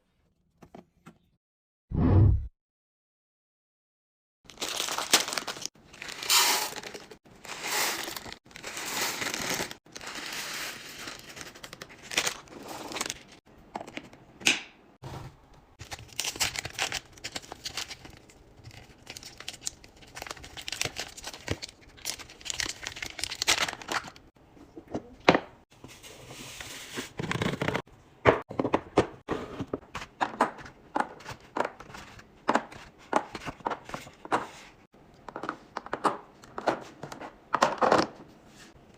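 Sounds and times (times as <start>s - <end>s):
plastic packaging crinkling: 4.5s - 13.4s, 15.8s - 24.2s.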